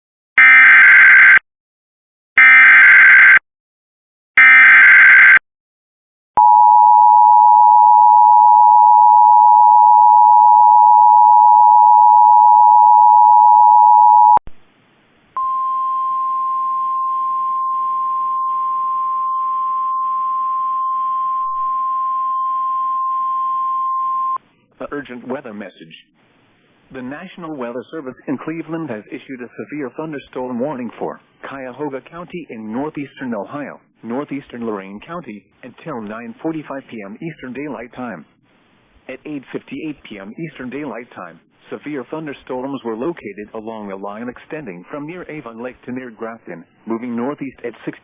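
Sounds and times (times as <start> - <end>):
steady high alarm tone: 2.4 - 3.4, 4.4 - 5.4, 6.4 - 14.4.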